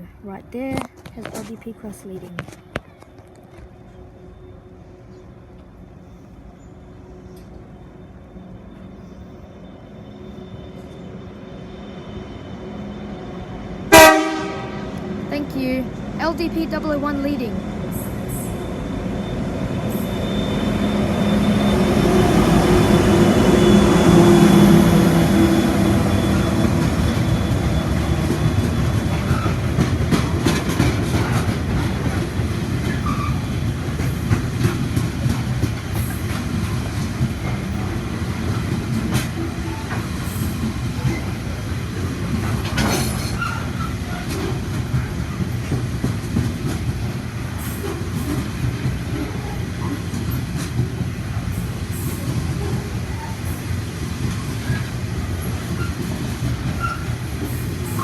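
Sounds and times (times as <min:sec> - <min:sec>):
diesel locomotive passing: 0:00.0 - 0:58.0
freight wagons rolling past: 0:15.0 - 0:58.0.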